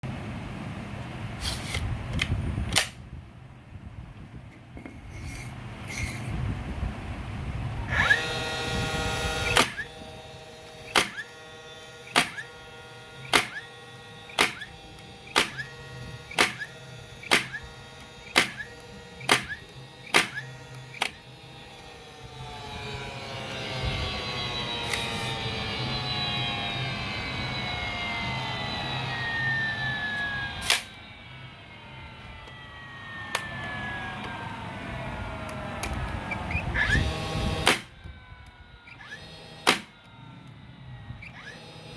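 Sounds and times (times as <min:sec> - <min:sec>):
nail gun firing snaps: 0:01.4 - 0:03.0, 0:09.4 - 0:10.0, 0:10.9 - 0:11.3, 0:12.1 - 0:12.6, 0:13.2 - 0:13.7, 0:14.3 - 0:21.2, 0:30.6 - 0:31.0, 0:37.6 - 0:38.0, 0:39.1 - 0:40.1
nailer motor whining: 0:07.7 - 0:41.9.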